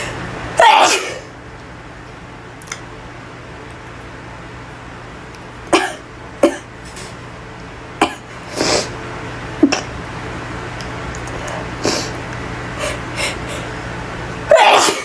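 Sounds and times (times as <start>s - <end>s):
woman sneezing: 0.6s - 1.3s, 14.5s - 15.0s.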